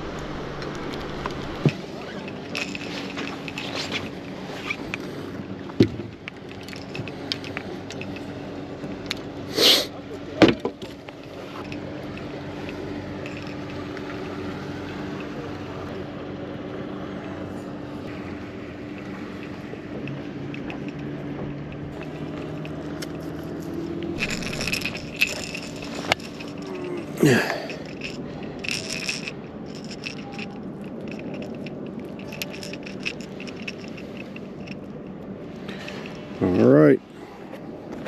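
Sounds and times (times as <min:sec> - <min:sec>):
low hum: 0:00.0 - 0:04.4, 0:11.6 - 0:36.4
bait scraping and rattling: 0:00.0 - 0:05.2, 0:06.1 - 0:08.4, 0:10.8 - 0:14.2, 0:21.7 - 0:36.2.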